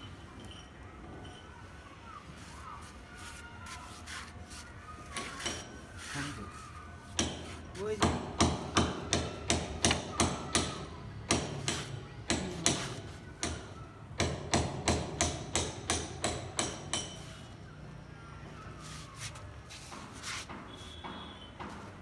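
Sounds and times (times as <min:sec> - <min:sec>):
hammer strikes: 0:07.1 - 0:17.2.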